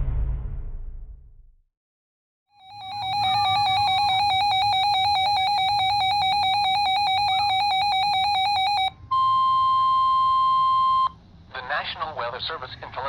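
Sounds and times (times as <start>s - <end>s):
rapidly pulsing electronic beep: 2.6s - 11.1s
faint radio hum: 10.6s - 13.0s.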